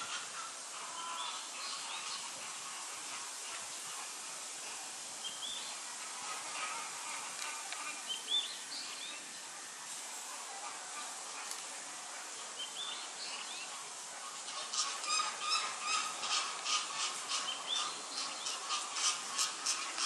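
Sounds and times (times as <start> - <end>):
outdoor background noise: 0.0 - 20.0
birds chirping: 12.3 - 20.0.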